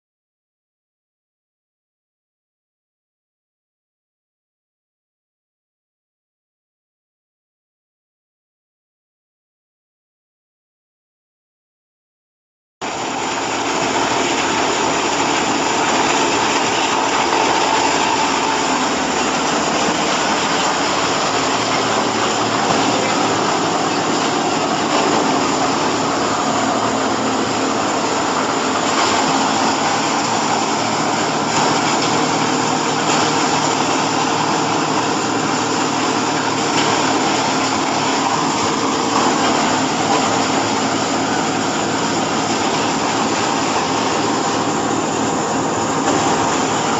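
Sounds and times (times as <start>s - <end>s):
baler machine din: 13.5s - 46.9s.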